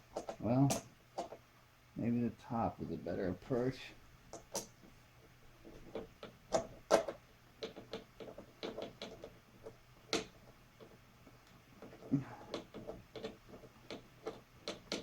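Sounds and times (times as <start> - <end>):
screwdriver clicking and tapping: 11.8 - 15.0.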